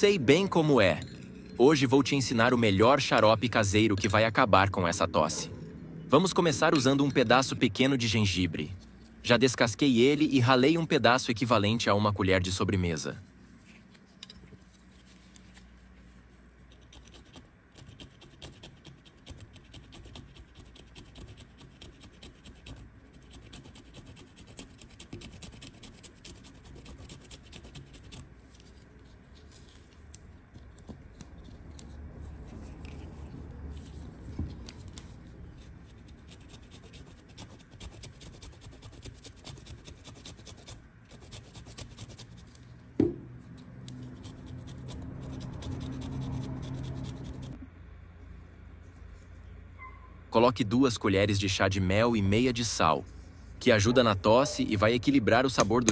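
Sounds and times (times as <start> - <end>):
ginger scratching on a grater: 16.7 - 28.3, 35.7 - 42.5, 44.0 - 47.6
sharp knock: 43.0 - 43.3.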